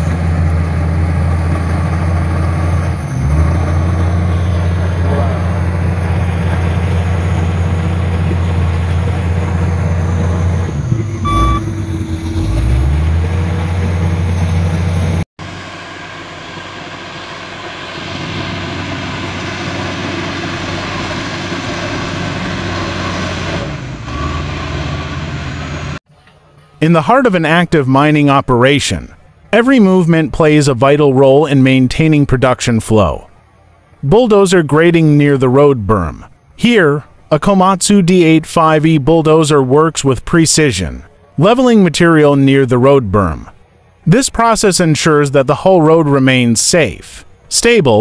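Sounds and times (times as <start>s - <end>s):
bulldozer diesel engine droning: 0.0s - 48.0s
brief beep: 11.1s - 11.9s.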